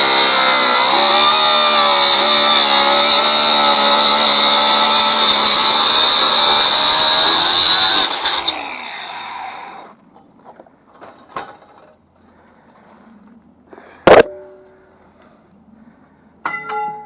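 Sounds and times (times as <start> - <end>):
angle grinder cutting steel: 0.0 - 9.9.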